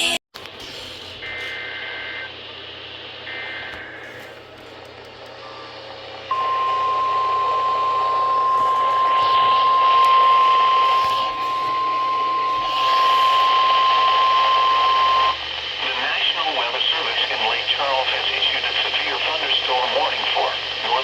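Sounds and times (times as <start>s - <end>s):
radio static hiss: 0.7s - 5.2s, 6.2s - 21.0s
steady loud alarm beep: 6.3s - 15.4s.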